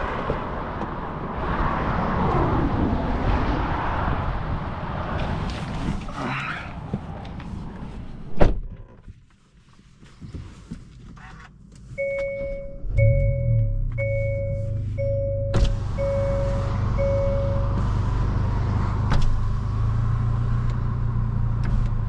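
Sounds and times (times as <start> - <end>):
car door shutting: 8.3 - 9.0, 15.5 - 18.0, 19.0 - 19.5
car engine starting and idling: 11.2 - 22.0
car warning chime: 12.0 - 17.7.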